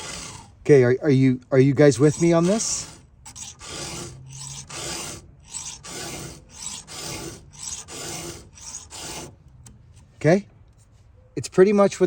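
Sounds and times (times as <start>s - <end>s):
file rasping on saw chain: 0.0s - 0.8s, 1.6s - 9.4s.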